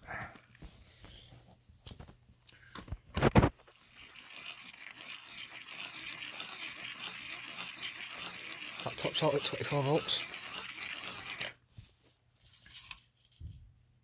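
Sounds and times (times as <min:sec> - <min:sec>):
hand-crank generator whirring: 0:03.2 - 0:11.6.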